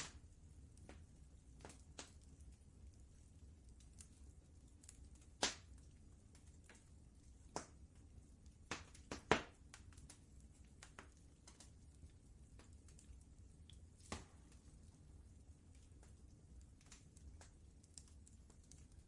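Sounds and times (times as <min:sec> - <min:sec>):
faint low rumble: 0:00.0 - 0:19.0
wood fire crackling: 0:00.0 - 0:19.0.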